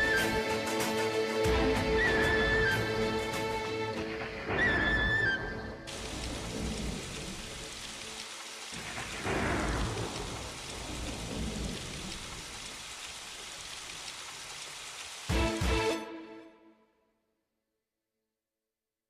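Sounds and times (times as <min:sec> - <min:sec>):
rain hiss: 0:00.0 - 0:16.3
low thunder rumbles: 0:04.5 - 0:08.0, 0:08.7 - 0:13.0
thunderclap: 0:08.8 - 0:12.8.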